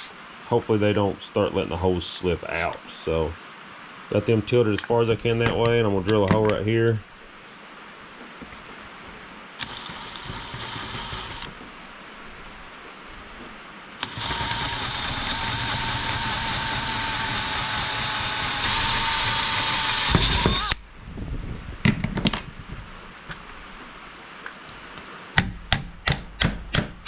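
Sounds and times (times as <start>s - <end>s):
power drill boring: 9.6s - 11.5s, 14.0s - 20.8s.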